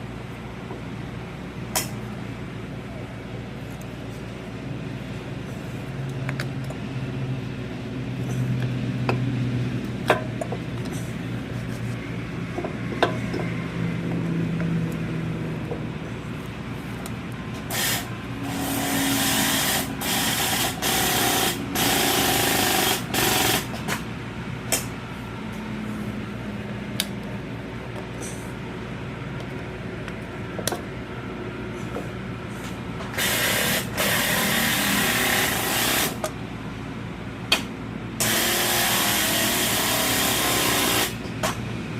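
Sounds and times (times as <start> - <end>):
compressed air hissing bursts: 17.7 - 23.9.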